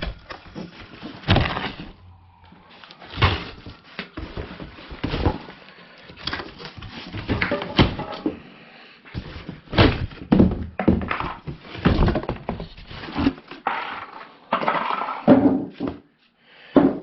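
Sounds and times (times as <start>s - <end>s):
cardboard scraping: 0.0s - 2.1s.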